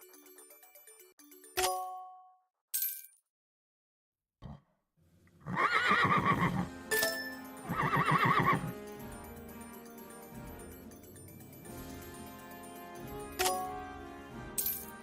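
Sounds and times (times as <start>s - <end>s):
horse whinnying: 5.4s - 6.7s, 7.6s - 8.7s
background music: 5.6s - 15.0s.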